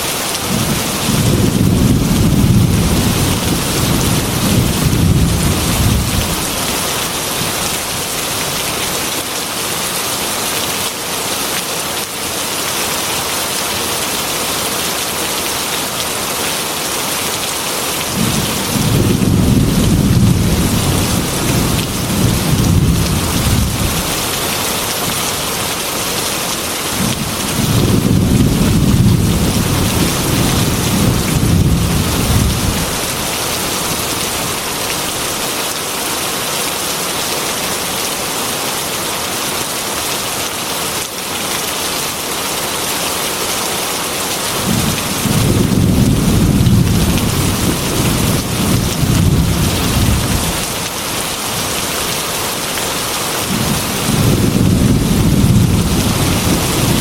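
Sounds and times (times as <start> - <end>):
heavy rain: 0.0 - 57.0
low thunder rumbles: 0.5 - 6.7, 18.1 - 24.4, 27.0 - 33.3, 44.6 - 50.7, 53.4 - 57.0.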